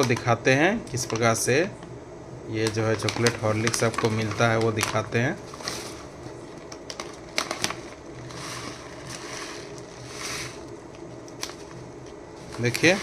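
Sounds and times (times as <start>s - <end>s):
plastic pouch rustling: 2.6s - 13.0s.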